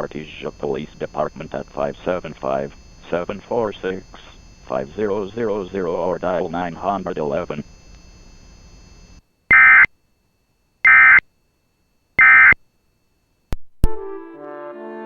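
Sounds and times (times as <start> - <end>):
buzzy digital data bursts: 0.0 - 9.9, 10.8 - 11.2, 12.2 - 12.6
music: 13.9 - 15.0.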